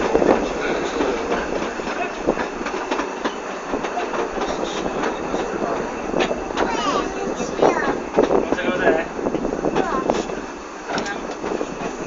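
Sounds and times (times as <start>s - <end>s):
train carriage rumble: 0.0s - 12.0s
wheels clicking over rails: 0.0s - 12.0s.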